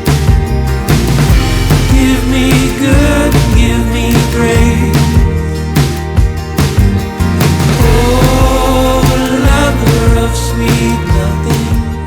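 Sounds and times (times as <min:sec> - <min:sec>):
band playing with steady beat: 0:00.0 - 0:12.0.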